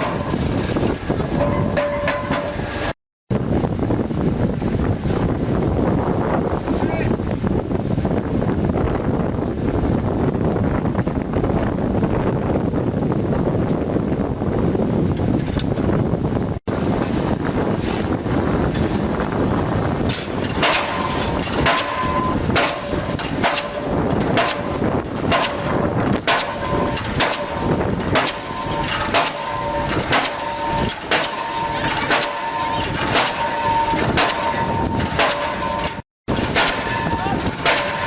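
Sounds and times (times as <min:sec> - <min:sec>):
pile hammer bangs: 0:00.0 - 0:00.4, 0:20.2 - 0:38.0
steady rumble: 0:00.0 - 0:38.0
metallic ring: 0:01.4 - 0:02.8, 0:20.6 - 0:38.0.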